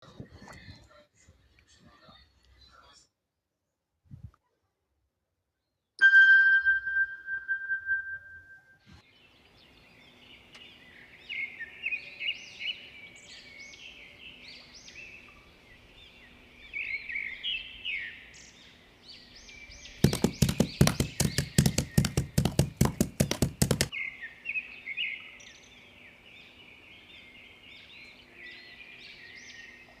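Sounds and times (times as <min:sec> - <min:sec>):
ringing tone: 0:06.0 - 0:08.8
birds chirping: 0:09.0 - 0:30.0
rapid sharp knocks: 0:20.0 - 0:23.9.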